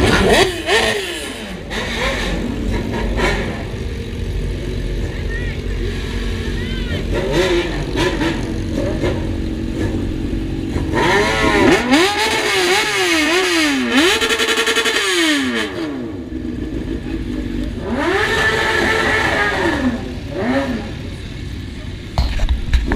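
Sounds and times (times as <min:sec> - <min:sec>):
motorcycle engine revving: 0:00.0 - 0:22.9.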